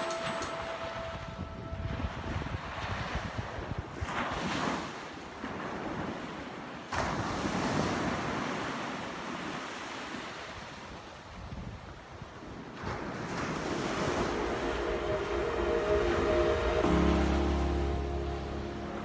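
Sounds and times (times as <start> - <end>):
wind buffeting microphone: 0.0 - 4.8
ocean waves breaking on shore: 0.0 - 19.0.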